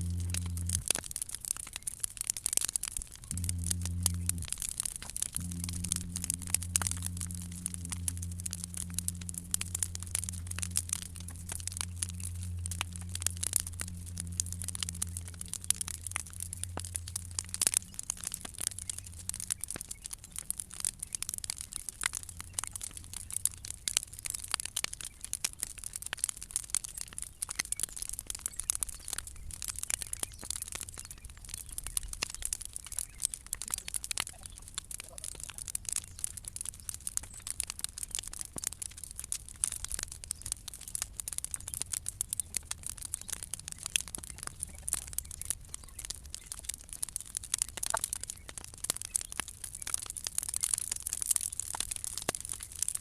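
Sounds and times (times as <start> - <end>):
bonfire crackling and popping: 0.0 - 53.0
steady hiss: 3.3 - 19.6.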